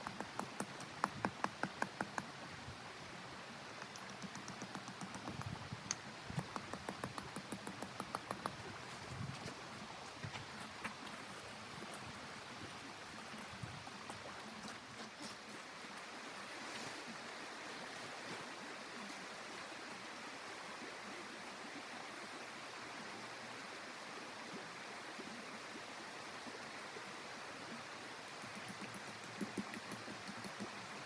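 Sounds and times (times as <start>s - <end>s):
sharp ticks: 3.8s - 8.6s, 28.3s - 30.8s.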